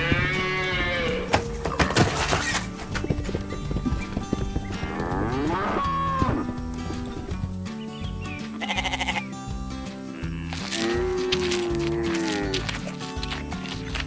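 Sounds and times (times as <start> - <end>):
background music: 0.0 - 14.0
cartoon cow mooing: 4.8 - 6.5, 10.2 - 12.8.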